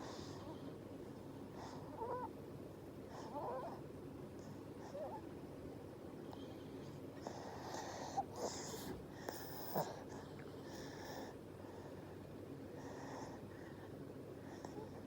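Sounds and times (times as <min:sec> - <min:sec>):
baby breathing: 0:07.2 - 0:12.0.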